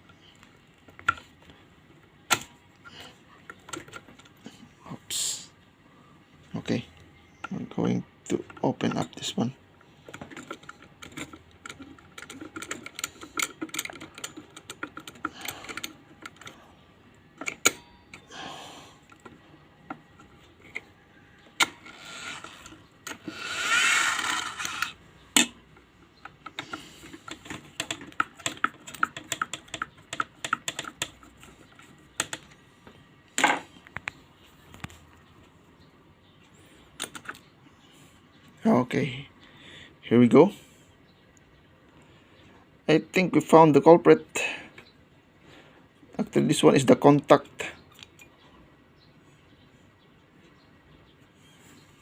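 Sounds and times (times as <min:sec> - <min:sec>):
scraping sound: 0:22.0 - 0:25.0.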